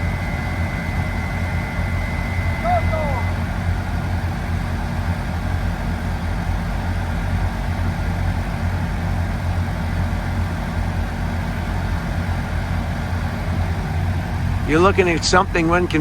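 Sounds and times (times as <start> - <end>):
heavy machinery engine rumble: 12.9 - 16.0.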